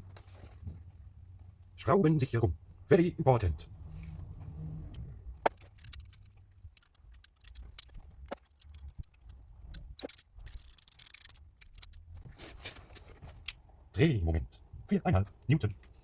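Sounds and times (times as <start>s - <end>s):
metallic clicks of screws and tools: 5.4s - 12.0s
scraping rustle: 12.1s - 13.5s.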